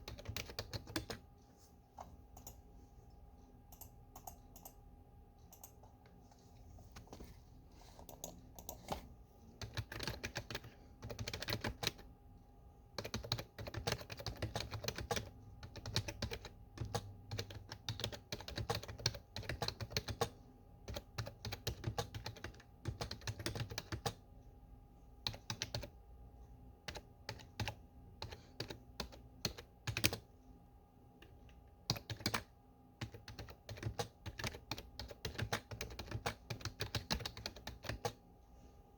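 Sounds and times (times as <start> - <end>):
faint steady hum: 0.0 - 38.9.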